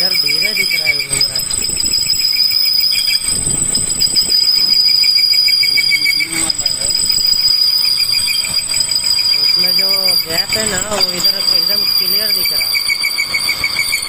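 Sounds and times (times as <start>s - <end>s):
voice: 0.0s - 1.6s, 5.6s - 7.1s, 9.4s - 12.8s
high-pitched mechanical whine: 0.0s - 14.0s.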